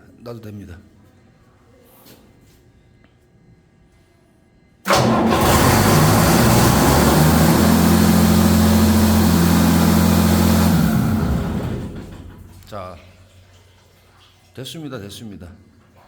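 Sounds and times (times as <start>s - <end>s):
diesel engine running: 4.9s - 12.7s.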